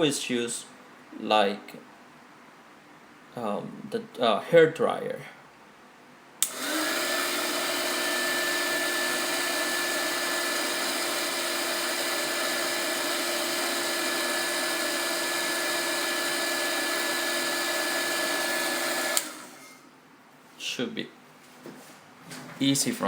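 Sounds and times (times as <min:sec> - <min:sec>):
heat gun blowing hiss: 0:06.4 - 0:19.8.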